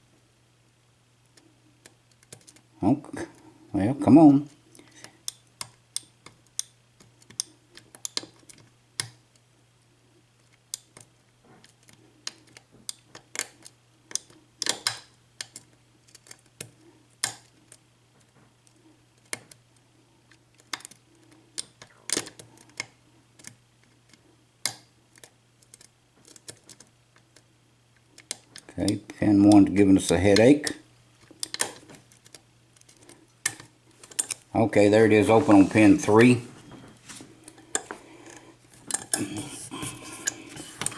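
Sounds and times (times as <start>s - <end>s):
steady low hum: 27.0s - 40.9s
lock pick clicking and scraping: 31.3s - 34.4s.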